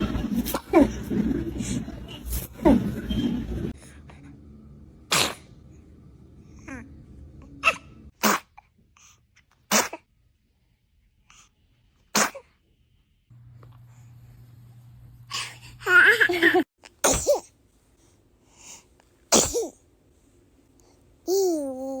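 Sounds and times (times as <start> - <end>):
baby sneezing: 5.1 - 5.5, 7.6 - 8.6, 9.7 - 10.1, 12.1 - 12.5, 17.0 - 17.5, 19.3 - 19.8.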